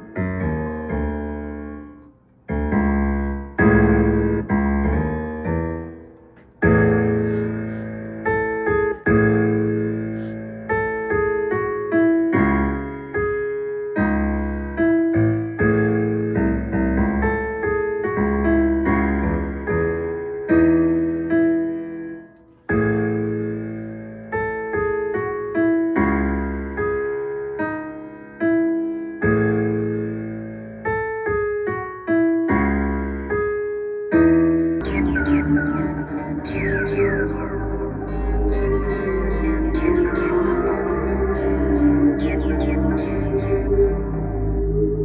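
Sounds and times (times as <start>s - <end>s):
electric piano chords: 0.0s - 45.0s
deep bass note: 34.8s - 45.0s.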